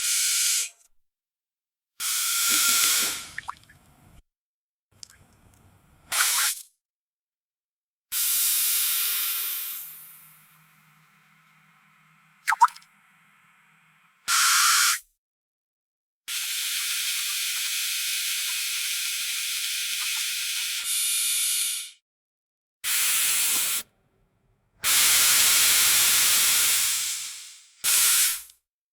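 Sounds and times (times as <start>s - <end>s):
air-water syringe hissing bursts: 2.4s - 3.6s, 22.9s - 23.9s, 24.8s - 28.5s.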